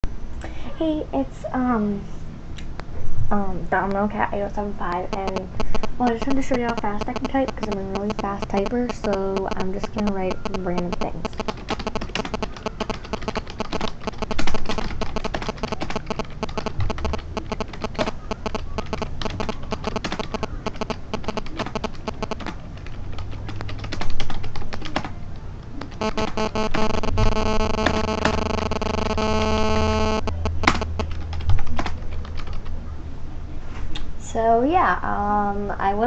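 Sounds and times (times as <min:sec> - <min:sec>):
electronic buzzing interference: 0:04.9 - 0:24.8, 0:25.8 - 0:31.3
typing on computer keyboard: 0:05.1 - 0:25.2, 0:25.8 - 0:32.7.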